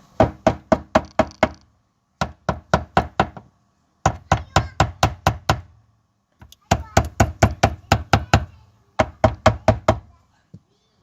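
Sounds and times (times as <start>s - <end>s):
rapid sharp knocking on metal: 0.2s - 1.6s, 2.2s - 5.7s, 6.6s - 10.1s.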